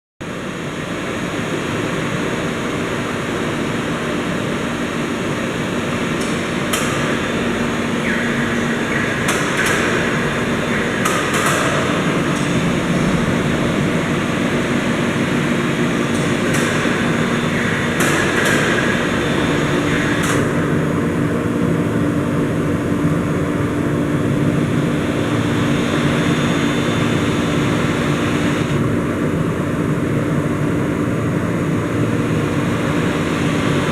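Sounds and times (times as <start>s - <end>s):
boring machine humming and whirring: 0.2s - 33.9s
sharp clicks and knocks: 8.1s - 12.8s, 16.1s - 19.1s.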